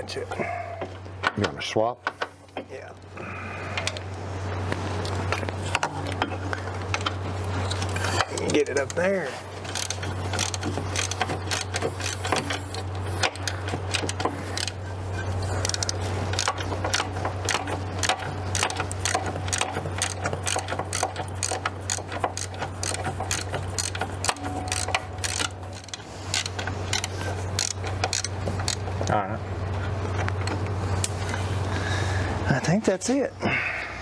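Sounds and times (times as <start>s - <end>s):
steady low hum: 0.0s - 34.0s
socket ratchet clicking: 7.0s - 14.9s, 15.6s - 29.0s.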